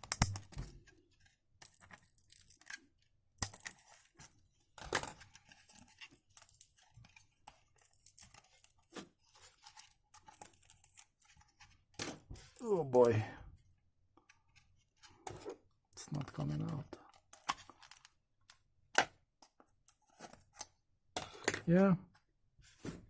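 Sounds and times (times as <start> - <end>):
plastic clicks and cracks: 0.0 - 2.8.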